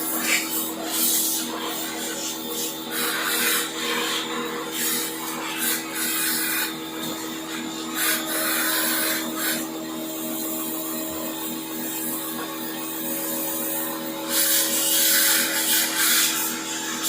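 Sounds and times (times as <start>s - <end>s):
rubbing or scrubbing noises: 14.3s - 17.0s.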